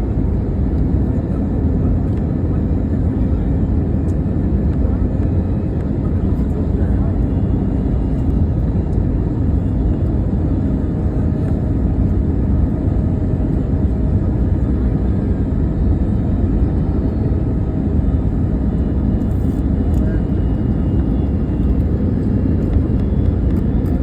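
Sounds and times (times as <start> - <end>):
airliner cabin engine rumble: 0.0 - 24.0.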